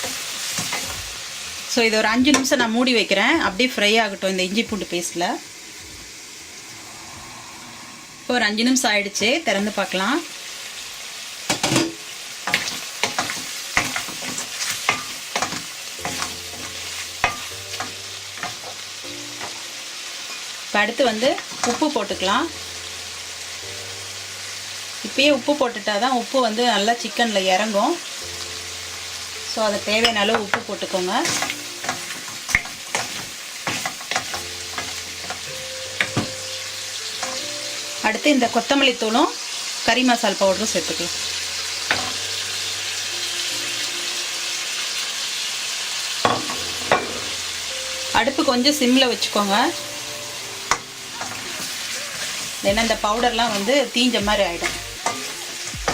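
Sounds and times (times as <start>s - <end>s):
frying sizzle: 0.0s - 55.9s
metal spatula scraping pan: 12.5s - 19.6s, 50.7s - 55.9s.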